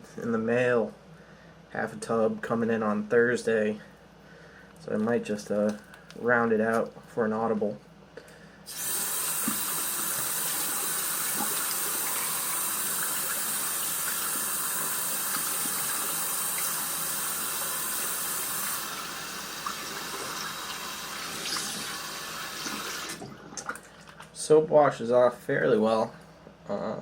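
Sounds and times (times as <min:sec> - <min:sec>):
tap water running into sink: 0:08.7 - 0:24.3.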